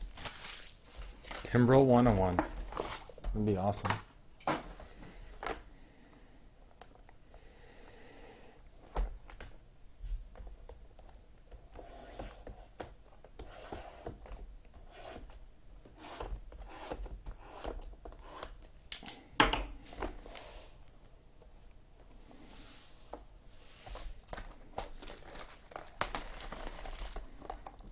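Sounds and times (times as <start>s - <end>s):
wrappers tearing and crinkling: 0.0s - 1.6s, 24.5s - 27.9s.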